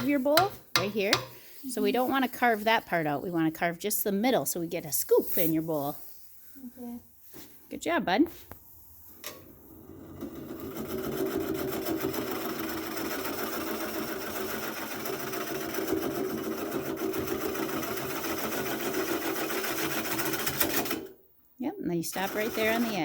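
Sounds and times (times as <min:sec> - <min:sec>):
lathe tool chattering against wood: 0:00.0 - 0:01.3.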